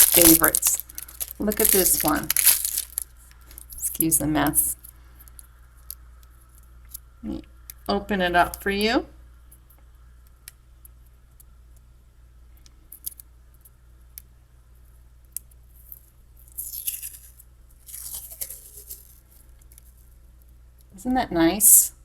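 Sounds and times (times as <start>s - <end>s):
wrapper tearing and crinkling: 0.0s - 3.7s, 16.4s - 19.3s
small clicks and handling noise: 12.6s - 14.3s, 15.3s - 20.9s.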